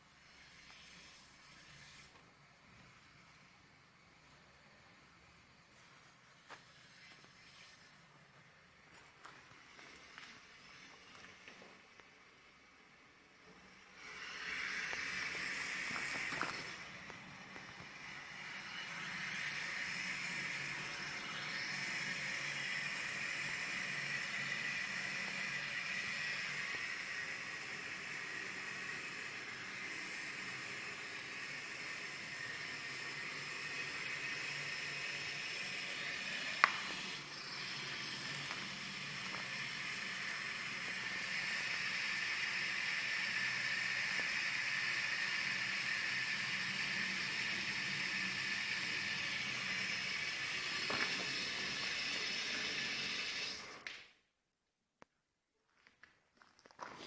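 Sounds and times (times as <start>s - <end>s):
steady hiss: 0.0s - 53.8s.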